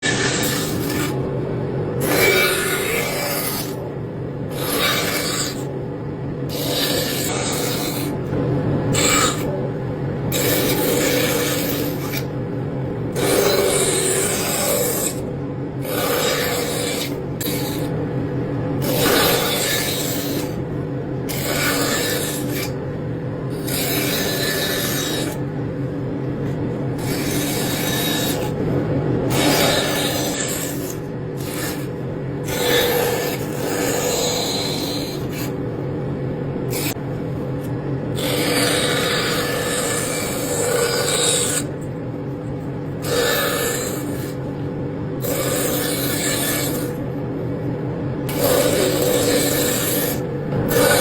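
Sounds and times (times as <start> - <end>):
rasp scraping wood: 4.5 - 5.7, 18.8 - 20.6, 21.3 - 22.8, 23.6 - 25.4, 29.3 - 35.6, 43.0 - 44.4, 48.3 - 51.0
abrasive scraping on wood: 18.8 - 20.6.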